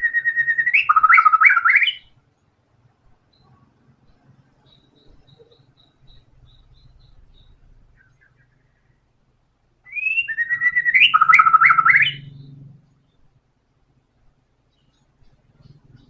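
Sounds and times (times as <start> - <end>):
bird singing whistled notes: 0.0 - 2.1, 3.3 - 8.8, 9.8 - 13.2.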